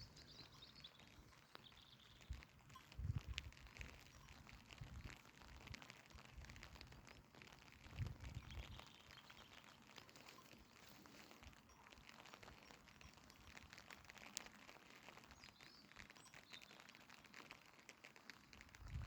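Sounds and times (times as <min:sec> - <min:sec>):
faint bird chirps: 0:00.0 - 0:03.0, 0:08.2 - 0:13.8, 0:15.1 - 0:17.0
faint rain patter: 0:00.0 - 0:19.0.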